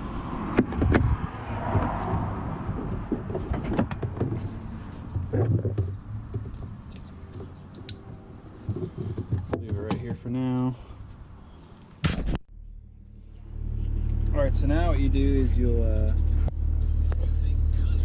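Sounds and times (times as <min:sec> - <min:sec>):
clicks and knocks of handling: 0:08.6 - 0:10.2.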